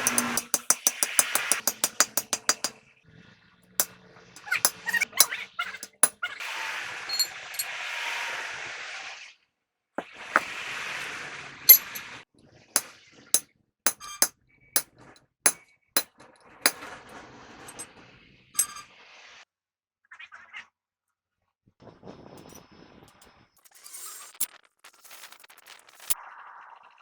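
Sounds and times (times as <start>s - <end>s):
sharp metallic clinks: 0.0s - 2.7s, 4.4s - 6.2s, 7.1s - 7.7s, 11.7s - 12.0s.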